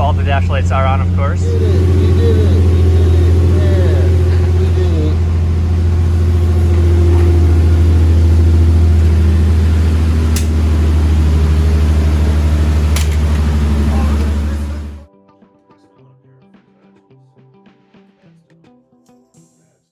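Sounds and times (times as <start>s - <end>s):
car engine idling: 0.0s - 15.1s.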